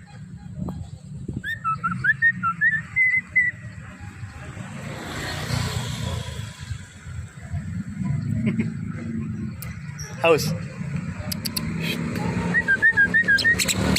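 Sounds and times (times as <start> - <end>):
passing vehicle: 0.0 - 13.9
myna whistling chirps: 1.4 - 3.7, 11.3 - 13.9.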